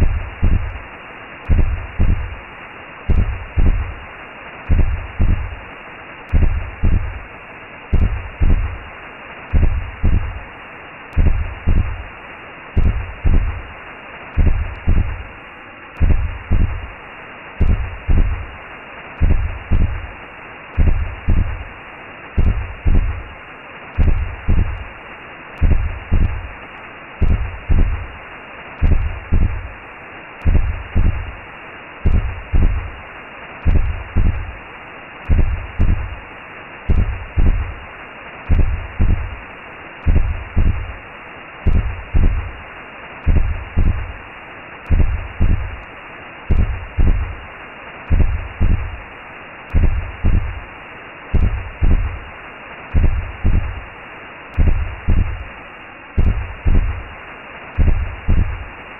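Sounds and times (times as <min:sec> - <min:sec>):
heartbeat thumps: 0:00.0 - 0:00.8, 0:01.4 - 0:02.4, 0:03.1 - 0:04.0, 0:04.7 - 0:05.6, 0:06.3 - 0:07.3, 0:07.9 - 0:08.9, 0:09.5 - 0:10.5, 0:11.1 - 0:12.1, 0:12.8 - 0:13.7, 0:14.4 - 0:15.3, 0:16.0 - 0:17.0, 0:17.6 - 0:18.6, 0:19.2 - 0:20.2, 0:20.8 - 0:21.7, 0:22.4 - 0:23.3, 0:24.0 - 0:25.0, 0:25.6 - 0:26.6, 0:27.2 - 0:28.2, 0:28.8 - 0:29.8, 0:30.4 - 0:31.4, 0:32.0 - 0:33.0, 0:33.6 - 0:34.6, 0:35.2 - 0:36.2, 0:36.9 - 0:37.8, 0:38.5 - 0:39.4, 0:40.0 - 0:41.0, 0:41.6 - 0:42.6, 0:43.2 - 0:44.2, 0:44.9 - 0:45.9, 0:46.5 - 0:47.4, 0:48.1 - 0:49.0, 0:49.7 - 0:50.7, 0:51.3 - 0:52.3, 0:52.9 - 0:53.9, 0:54.6 - 0:55.5, 0:56.2 - 0:57.1, 0:57.8 - 0:58.7
whooshing hiss: 0:00.0 - 0:23.4, 0:24.0 - 0:54.0, 0:54.6 - 0:55.6.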